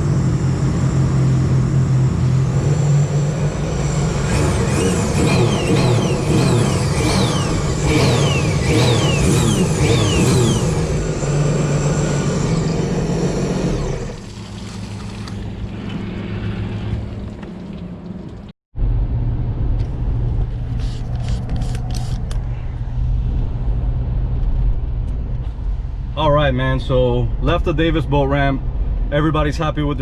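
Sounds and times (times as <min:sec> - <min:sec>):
loud engine running: 0:00.0 - 0:17.7
low rumble of car moving: 0:00.0 - 0:30.0.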